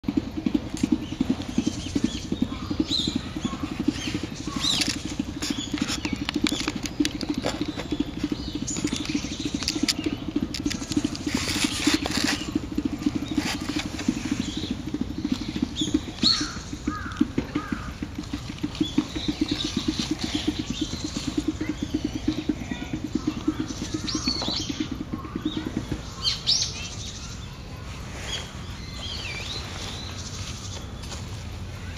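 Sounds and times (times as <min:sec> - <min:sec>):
hand drum strikes: 0:00.0 - 0:26.6
shrill bird calls: 0:00.9 - 0:31.2.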